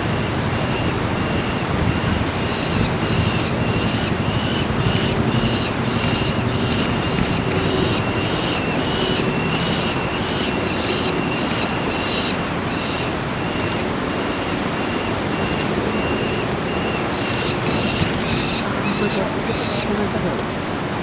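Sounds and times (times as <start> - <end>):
falcon calling: 0.0 - 20.4
wind noise on microphone: 0.0 - 21.0.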